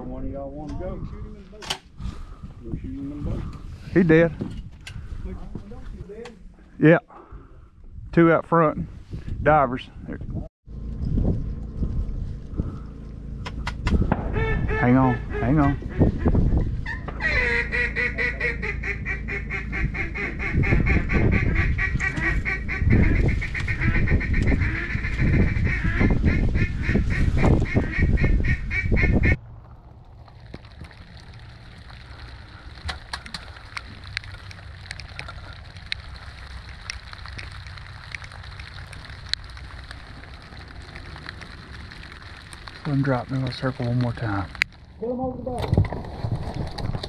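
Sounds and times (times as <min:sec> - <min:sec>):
duck call rattling: 0:16.8 - 0:29.4
faint patter with ticks: 0:30.2 - 0:44.9.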